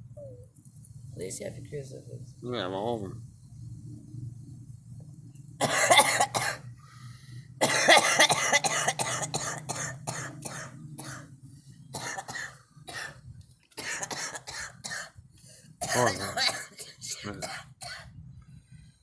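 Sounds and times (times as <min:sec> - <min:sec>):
girl coughing: 0:05.6 - 0:06.6, 0:07.6 - 0:11.3, 0:12.0 - 0:13.2, 0:13.8 - 0:15.2, 0:15.8 - 0:18.1.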